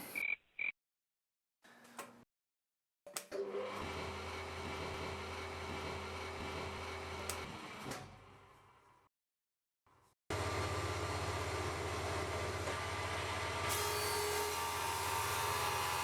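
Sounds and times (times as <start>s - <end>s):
planer running and winding down: 3.4s - 7.9s, 10.3s - 16.0s.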